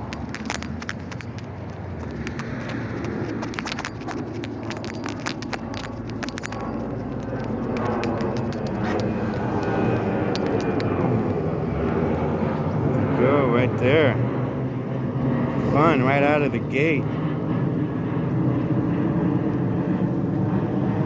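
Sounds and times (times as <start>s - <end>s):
sharp clicks: 0.0s - 12.0s.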